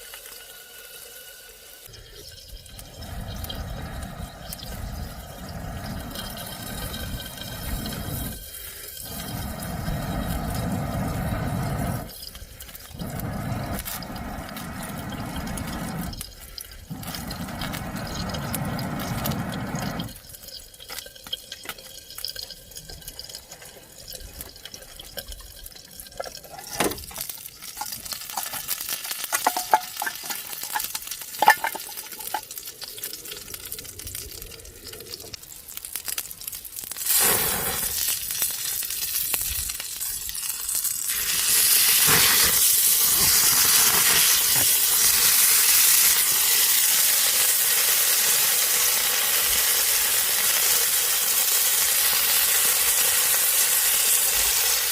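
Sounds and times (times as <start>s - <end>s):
loud steady hiss: 0.0s - 20.2s, 37.0s - 40.4s, 41.0s - 54.9s
water pouring: 0.0s - 54.9s.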